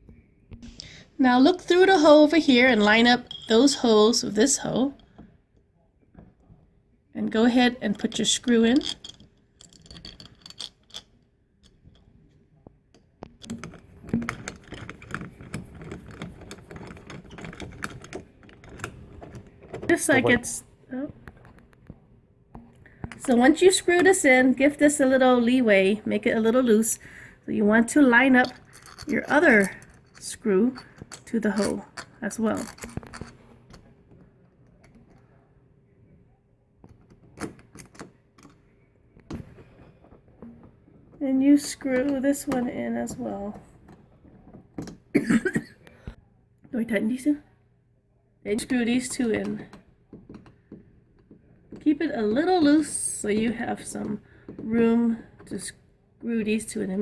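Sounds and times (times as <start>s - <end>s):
doorknob hardware clicking: 13.4s - 20.0s, 36.9s - 38.6s
screwdriver clicking and scraping: 13.4s - 20.0s, 28.4s - 33.8s.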